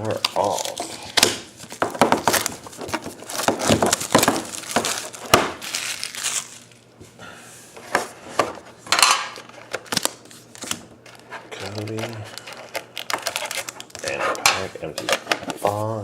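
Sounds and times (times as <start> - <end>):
card pack wrappers crinkling and tearing: 0.0 - 6.9, 9.3 - 15.9.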